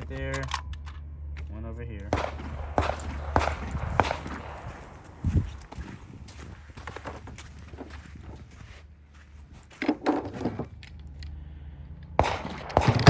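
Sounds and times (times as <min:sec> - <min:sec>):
metallic clicks and clinks: 0:00.0 - 0:01.2, 0:09.8 - 0:13.0
steady low hum: 0:00.0 - 0:13.0.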